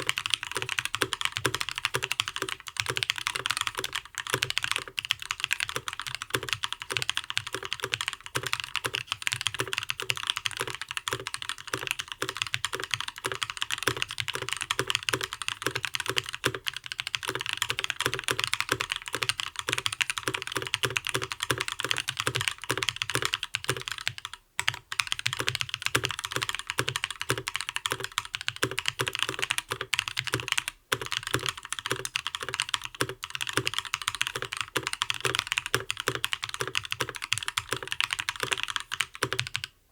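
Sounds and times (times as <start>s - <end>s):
mechanical keyboard typing: 0.0s - 39.8s.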